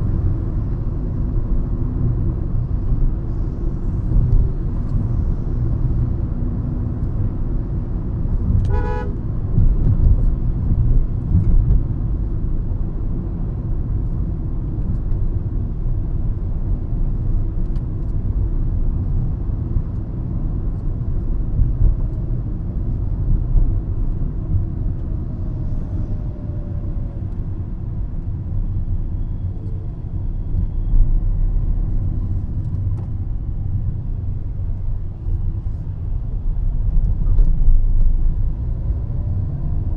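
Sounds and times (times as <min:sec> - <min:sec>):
car engine and tyres rumbling: 0:00.0 - 0:39.9
car horn beep: 0:08.7 - 0:09.2.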